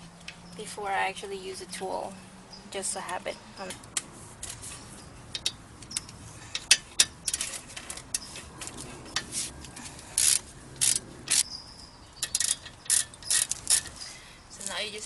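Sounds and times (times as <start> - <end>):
socket ratchet clicking: 5.3 - 7.5, 10.2 - 11.5, 12.2 - 13.9.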